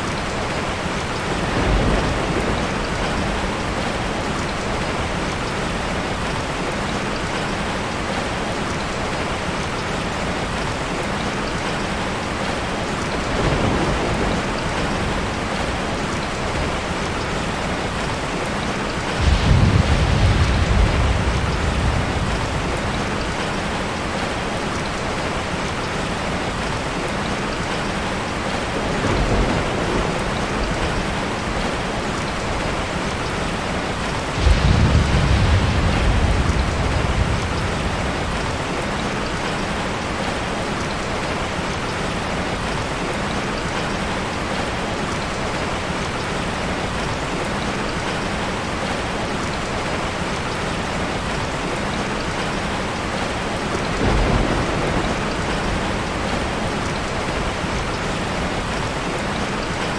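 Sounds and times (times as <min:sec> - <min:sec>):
heavy rain falling: 0:00.0 - 0:59.9
thunder rumbling: 0:01.2 - 0:05.3, 0:13.1 - 0:18.1, 0:18.9 - 0:25.8, 0:28.8 - 0:40.4, 0:53.1 - 0:59.4.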